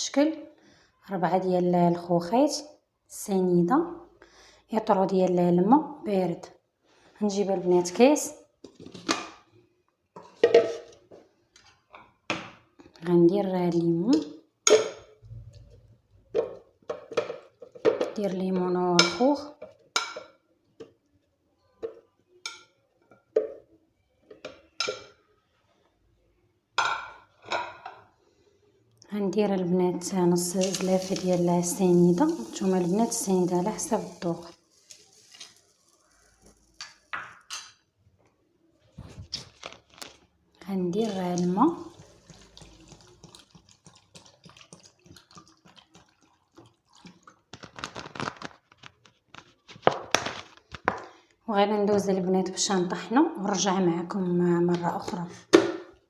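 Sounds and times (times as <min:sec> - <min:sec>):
water pouring and splashing: 0:30.4 - 0:37.4, 0:40.9 - 0:49.0.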